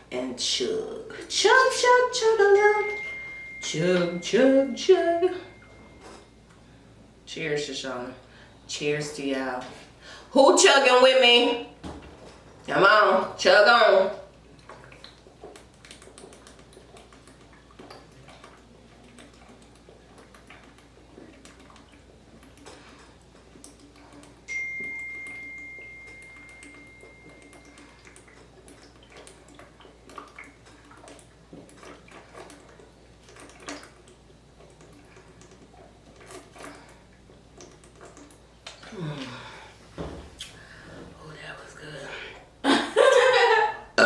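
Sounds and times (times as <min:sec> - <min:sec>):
ringing tone: 0:02.6 - 0:06.3, 0:24.5 - 0:28.0.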